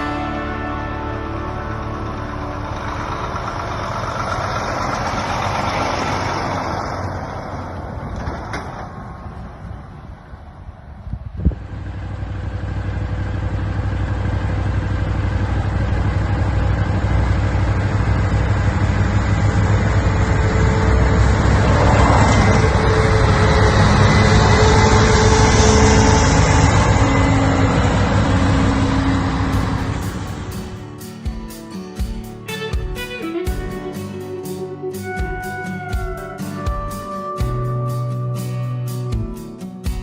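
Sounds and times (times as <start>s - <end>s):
farm machine engine under load: 0.0s - 31.0s.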